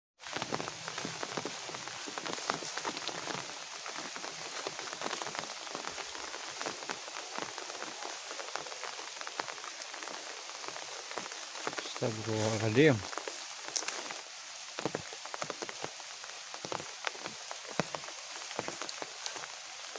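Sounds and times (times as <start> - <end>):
rain falling: 0.2 - 19.9
raindrops striking surfaces: 0.2 - 19.9.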